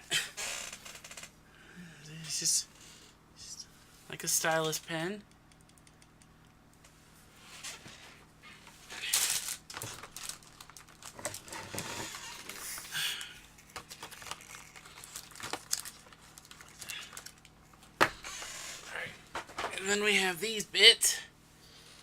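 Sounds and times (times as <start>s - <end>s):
packaging rustling and crinkling: 9.0s - 17.6s.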